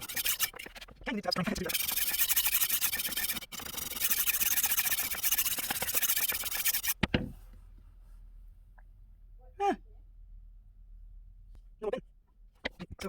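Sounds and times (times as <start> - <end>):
knife sharpener grinding: 0.0 - 7.0.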